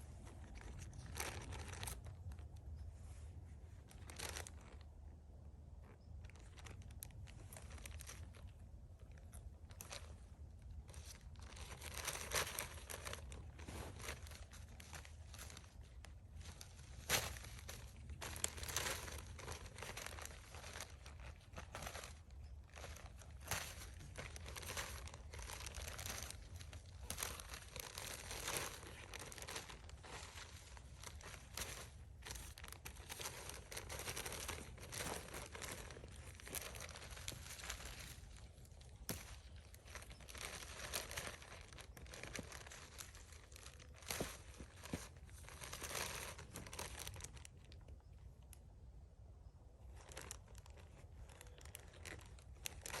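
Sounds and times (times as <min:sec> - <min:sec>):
pine needles and twigs rustling: 0:00.0 - 0:48.7, 0:49.5 - 0:53.0
twigs snapping: 0:22.8 - 0:43.0.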